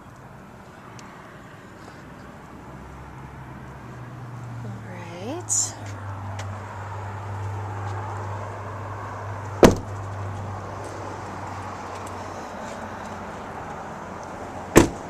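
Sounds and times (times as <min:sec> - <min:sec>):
car door slams: 0:09.6 - 0:10.0, 0:14.7 - 0:15.0.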